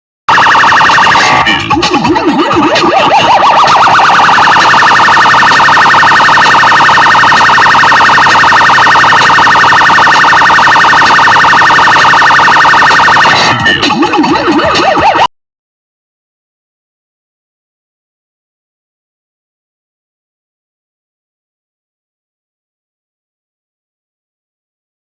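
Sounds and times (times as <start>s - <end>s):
loud electronic siren-like warble: 0.3s - 15.3s.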